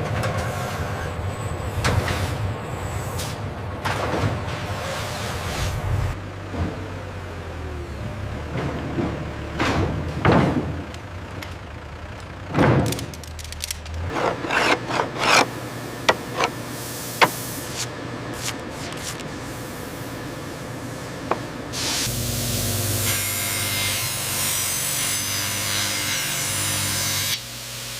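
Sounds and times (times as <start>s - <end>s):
low factory machine hum: 0.0s - 27.9s
wood rubbing and scraping: 12.9s - 16.6s, 17.2s - 19.4s.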